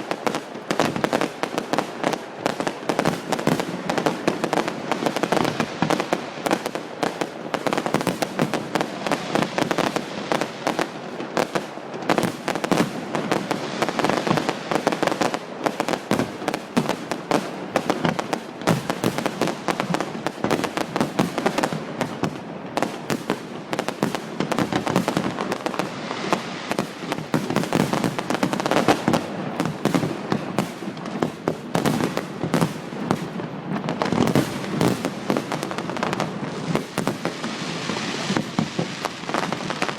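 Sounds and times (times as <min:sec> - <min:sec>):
fireworks bangs and crackles: 0:00.0 - 0:39.9.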